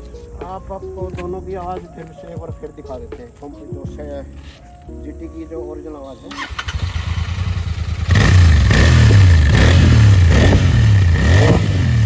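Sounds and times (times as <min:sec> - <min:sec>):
motorcycle engine idling and revving: 0:06.3 - 0:12.0.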